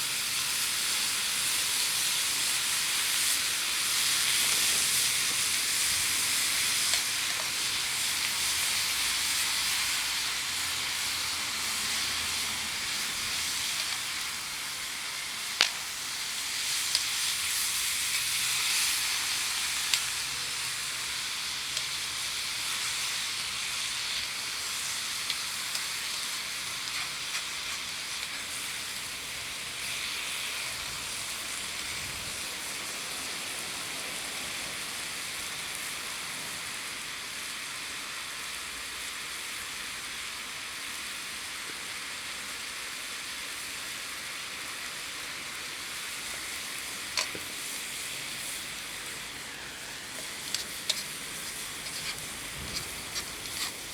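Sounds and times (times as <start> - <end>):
vegetables sizzling in frying pan: 0.0 - 53.9
sharp clicks from pan: 6.8 - 7.6, 15.5 - 15.9, 19.7 - 20.2, 21.7 - 22.0, 25.0 - 28.6, 47.1 - 47.6, 50.2 - 53.9.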